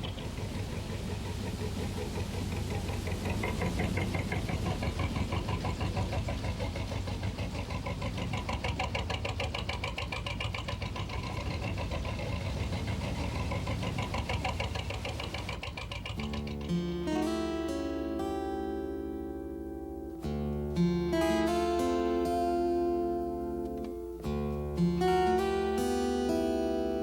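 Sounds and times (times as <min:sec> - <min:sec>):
engine idling: 0:00.0 - 0:18.9
acoustic guitar music: 0:15.6 - 0:27.0.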